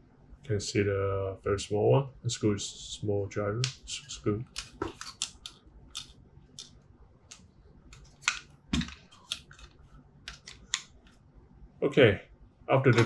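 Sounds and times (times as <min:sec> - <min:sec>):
plastic parts handled: 0:04.5 - 0:11.2.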